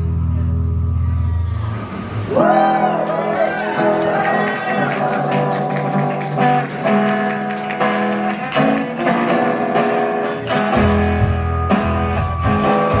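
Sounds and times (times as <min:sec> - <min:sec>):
deep bass notes: 0:00.0 - 0:02.5, 0:10.4 - 0:13.0
guitar strumming chords: 0:03.8 - 0:13.0.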